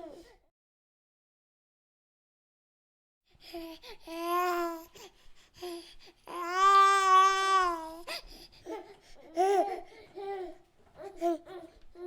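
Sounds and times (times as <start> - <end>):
baby crying and babbling: 0.0 - 0.4, 3.5 - 5.0, 6.3 - 12.0.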